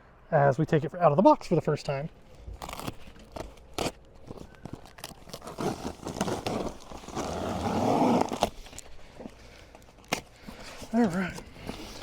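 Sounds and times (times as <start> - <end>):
cardboard scraping and rustling: 2.5 - 12.0.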